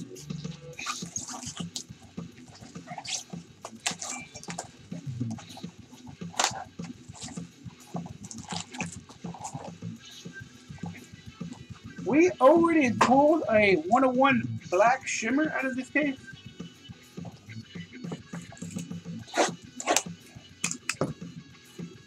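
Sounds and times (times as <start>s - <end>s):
cards being handled: 2.6s - 9.7s, 18.1s - 21.2s.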